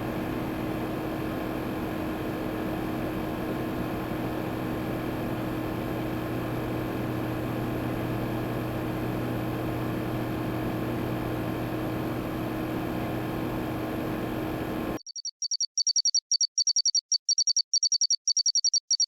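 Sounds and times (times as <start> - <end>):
computer fan whirring: 0.0 - 15.0
low electrical hum: 0.0 - 15.0.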